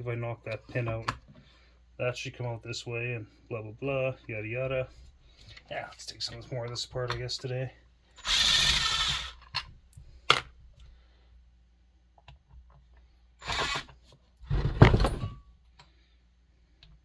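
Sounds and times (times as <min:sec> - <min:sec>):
metal parts rattling: 0:14.6 - 0:15.4.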